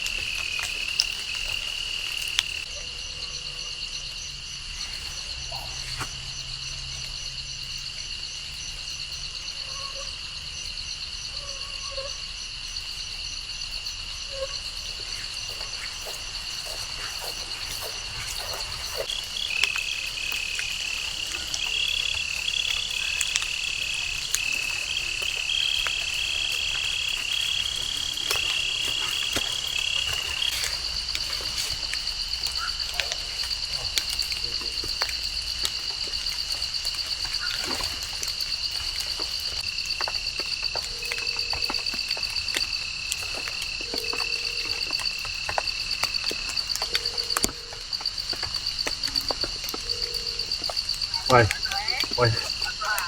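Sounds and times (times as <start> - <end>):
frogs and insects trilling: 0.0 - 53.0
low frog call: 49.1 - 53.0.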